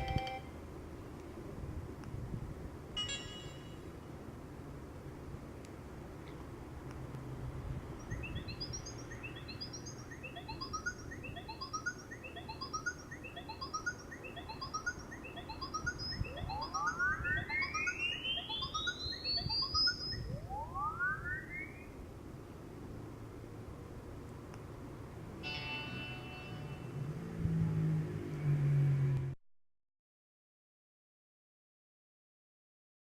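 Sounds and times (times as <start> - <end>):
quick rising ringtone chirps: 3.0 - 3.9, 8.0 - 21.9
long upward pitch sweeps: 8.0 - 22.0.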